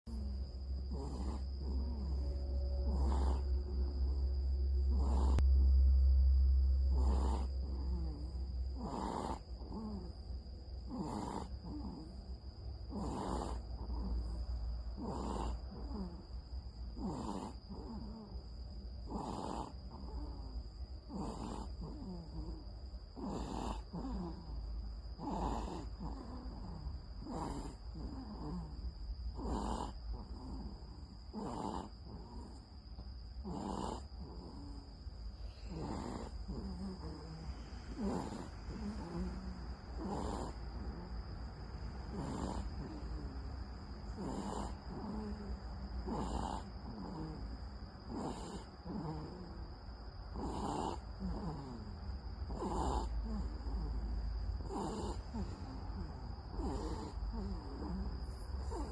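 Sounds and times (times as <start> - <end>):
person snoring: 0.1 - 5.7, 6.8 - 10.2, 10.8 - 12.2, 12.9 - 14.4, 15.0 - 16.3, 17.0 - 18.4, 19.0 - 22.6, 23.2 - 24.6, 25.2 - 32.6, 33.4 - 34.9, 35.5 - 41.2, 42.0 - 43.4, 44.1 - 47.4, 48.1 - 49.6, 50.3 - 51.9, 52.5 - 58.9
low rumble: 0.1 - 10.9.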